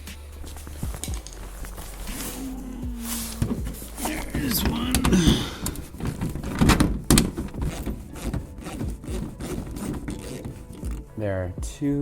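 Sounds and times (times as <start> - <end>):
metal bolts knocking: 3.4 - 8.4.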